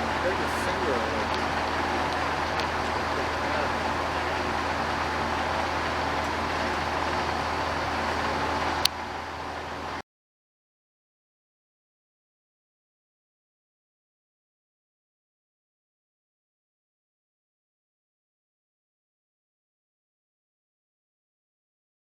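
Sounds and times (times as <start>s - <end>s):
car running hum: 0.0s - 10.0s
heavy rain on a car: 0.0s - 10.0s.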